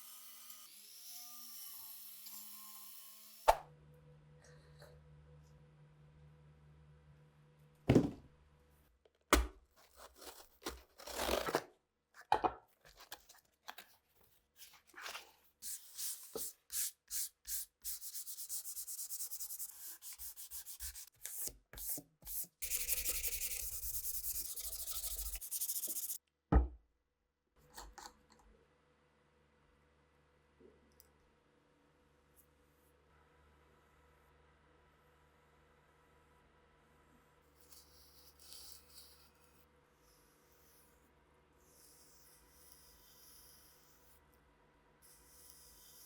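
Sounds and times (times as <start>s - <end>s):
sanding metal parts: 22.6s - 26.2s.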